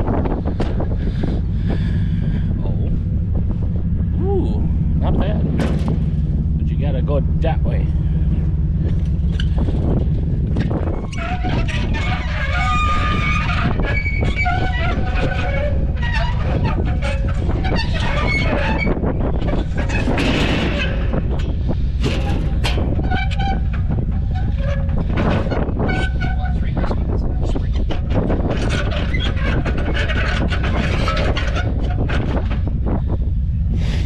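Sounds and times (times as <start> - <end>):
trailer rattling: 0.0 - 34.0
truck engine and road rumble: 0.0 - 34.0
short high squeaks: 10.6 - 33.1.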